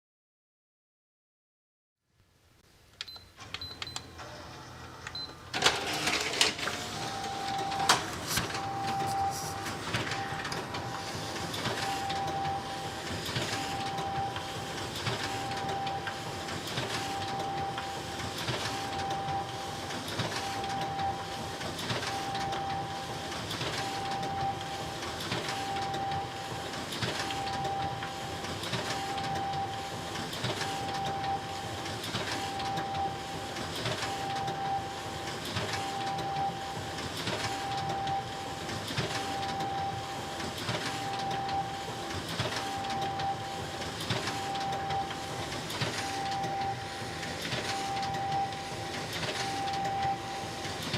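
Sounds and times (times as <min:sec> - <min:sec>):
photocopier pulsing hum: 0:02.7 - 0:50.9
control panel beeps: 0:03.0 - 0:04.2, 0:05.0 - 0:06.0, 0:07.0 - 0:14.7, 0:46.0 - 0:50.6
photocopier clunk: 0:05.5 - 0:10.8.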